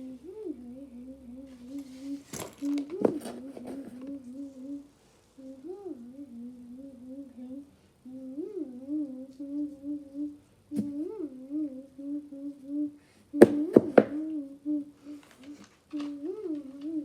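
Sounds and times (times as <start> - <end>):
child humming: 0.0 - 13.0, 13.6 - 17.0
sharp knocks: 13.4 - 14.2.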